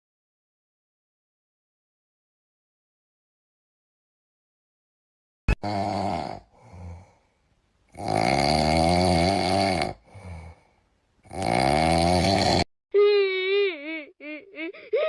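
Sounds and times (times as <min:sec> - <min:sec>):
loud snoring: 0:05.5 - 0:07.1, 0:07.9 - 0:10.6, 0:11.2 - 0:12.7
breathing out: 0:06.5 - 0:07.4, 0:10.0 - 0:10.9.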